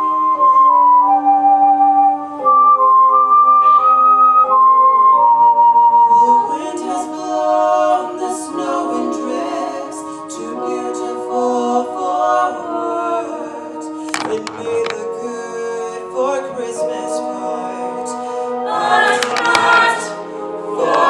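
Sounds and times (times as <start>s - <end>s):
ensemble singing in harmony: 6.1s - 21.0s.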